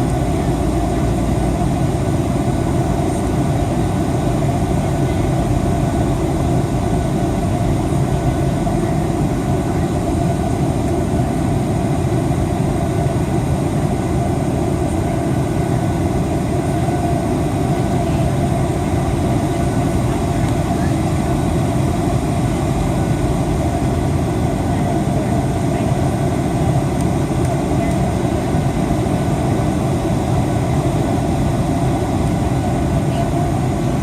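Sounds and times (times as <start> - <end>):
jet engines rumbling: 0.0 - 34.0.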